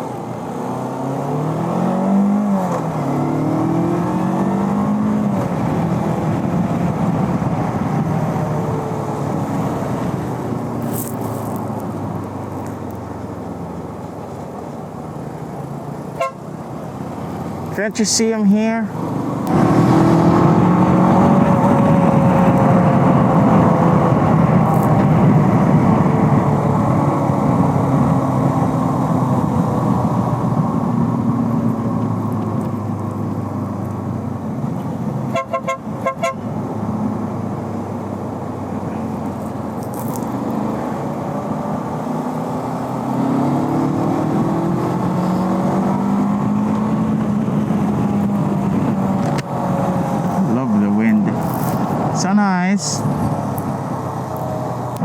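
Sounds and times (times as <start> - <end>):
motorcycle engine accelerating: 0.0 - 35.4, 36.3 - 55.0
wind and road noise: 0.0 - 55.0
horn toot: 16.2 - 16.5, 35.3 - 36.5.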